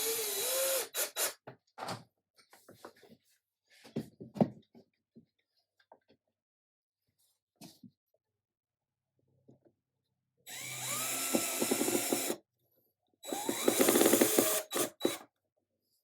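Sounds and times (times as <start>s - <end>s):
power drill whining: 0.0s - 1.3s, 10.5s - 12.4s, 13.2s - 15.2s.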